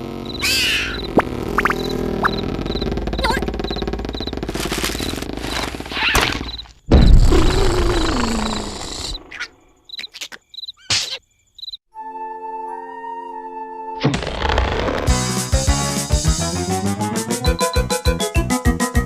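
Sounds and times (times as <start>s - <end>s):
high cricket-like chirps: 0.0s - 11.8s
dense rattling noise: 1.0s - 9.0s.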